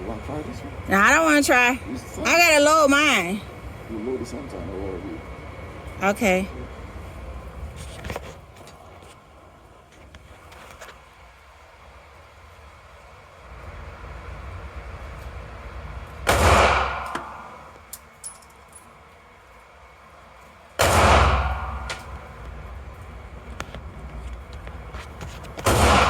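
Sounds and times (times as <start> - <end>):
handgun shots: 16.3 - 17.6, 20.8 - 22.2, 25.6 - 26.0.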